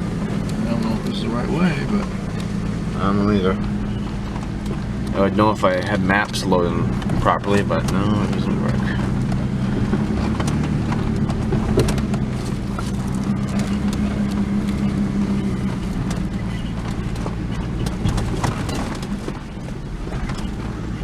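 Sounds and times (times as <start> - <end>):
truck engine running: 0.0 - 21.0
clicks and knocks: 7.8 - 20.8.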